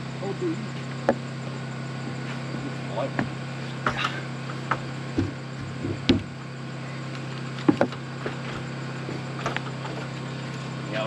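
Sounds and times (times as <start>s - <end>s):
steady low hum: 0.0s - 11.0s
lumber knocking: 4.7s - 6.4s, 7.6s - 8.0s.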